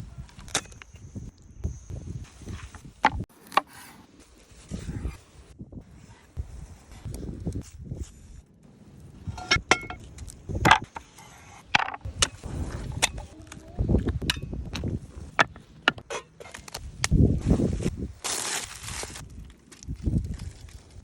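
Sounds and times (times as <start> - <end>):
cookware knocking and clinking: 9.4 - 10.0.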